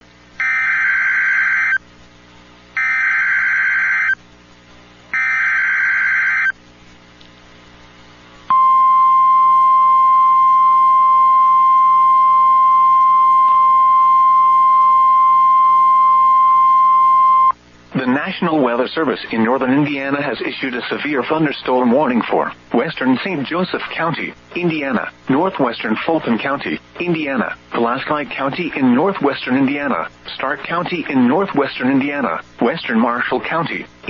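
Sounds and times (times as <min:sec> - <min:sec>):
single-tone attention signal: 0:08.5 - 0:17.5.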